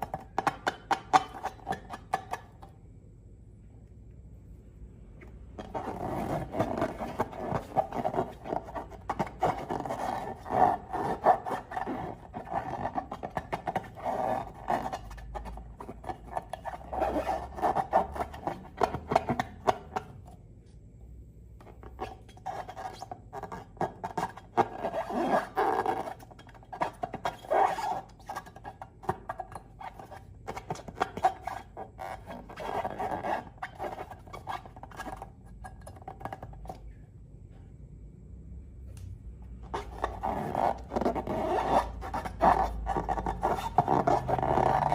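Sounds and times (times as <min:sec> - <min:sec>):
hands rubbing balloons and slime: 0:05.6 - 0:20.2, 0:39.6 - 0:44.9.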